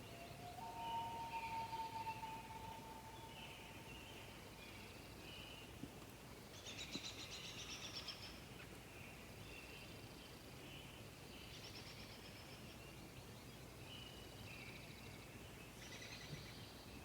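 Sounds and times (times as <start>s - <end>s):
long steady animal call: 0.0s - 4.4s.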